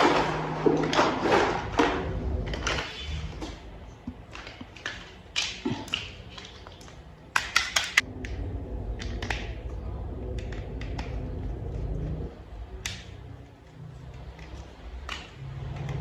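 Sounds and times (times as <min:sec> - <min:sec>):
low steady hum: 0:00.0 - 0:16.0
plastic toy parts clicking: 0:04.3 - 0:08.0.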